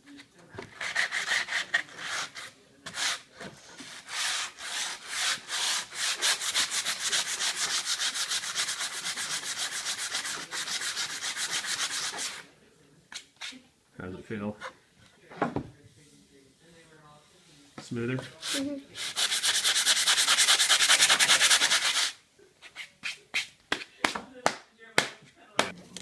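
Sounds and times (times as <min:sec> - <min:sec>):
sandpaper rubbing on wood: 0:03.8 - 0:12.4, 0:18.4 - 0:23.5.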